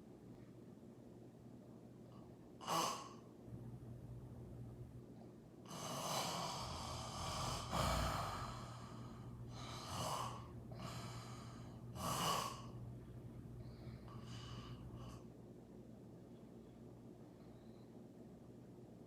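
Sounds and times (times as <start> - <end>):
woman snoring: 5.7 - 12.8.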